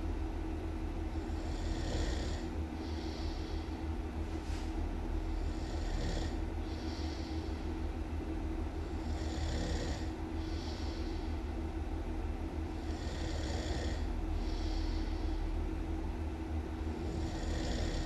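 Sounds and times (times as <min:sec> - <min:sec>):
steady low hum: 0:00.0 - 0:18.0
person snoring: 0:01.3 - 0:03.5, 0:05.4 - 0:07.5, 0:08.9 - 0:11.1, 0:12.8 - 0:15.2, 0:17.0 - 0:18.0.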